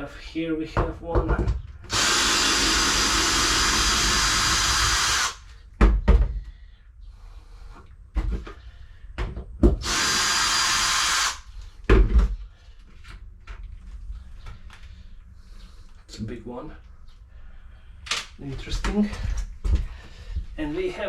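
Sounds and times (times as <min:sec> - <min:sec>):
knocks and clunks: 0:00.8 - 0:01.8, 0:05.8 - 0:06.5
power drill running: 0:01.9 - 0:05.5, 0:09.8 - 0:11.5.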